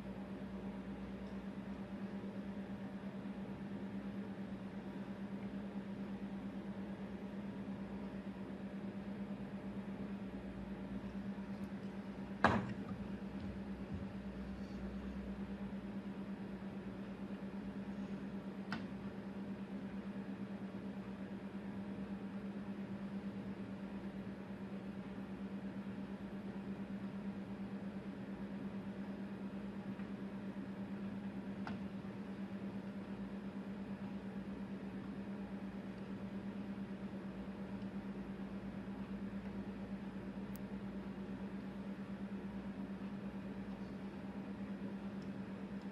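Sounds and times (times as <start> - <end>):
low hum with fast flutter: 0.0 - 22.2
electrical hum: 0.0 - 45.9.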